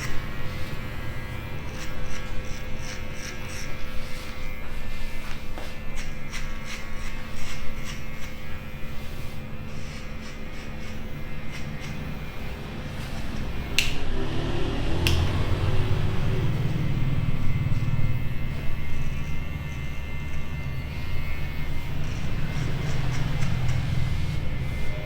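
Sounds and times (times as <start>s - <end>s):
steady electric hum: 0.0s - 25.0s
low rumble: 11.7s - 25.0s.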